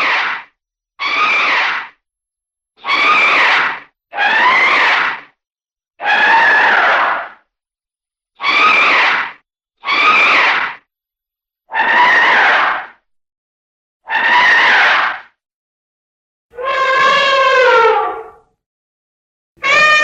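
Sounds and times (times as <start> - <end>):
elephant trumpeting: 16.6 - 18.4, 19.6 - 20.0.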